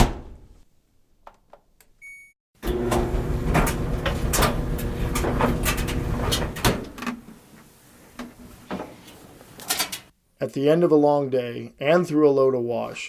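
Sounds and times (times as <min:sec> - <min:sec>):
washing machine tumbling: 0:02.6 - 0:07.4.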